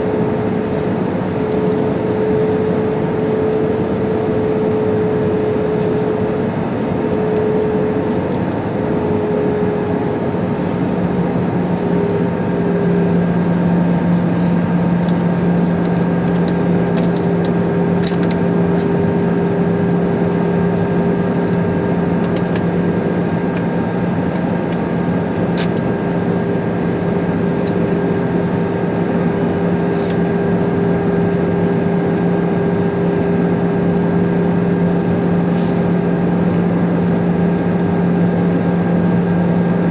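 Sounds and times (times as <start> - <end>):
jet engine hum: 0.0 - 39.9
cabin air rush: 9.4 - 34.1, 34.9 - 36.1.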